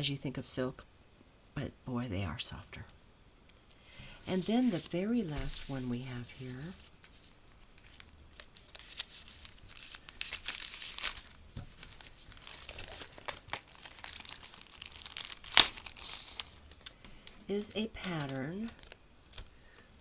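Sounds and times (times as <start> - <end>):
package wrapping crinkling and tearing: 6.7 - 17.0, 18.0 - 19.9.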